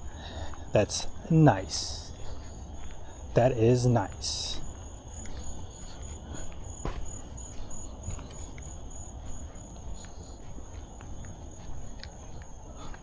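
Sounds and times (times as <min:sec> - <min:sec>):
insects trilling: 0:00.0 - 0:13.0.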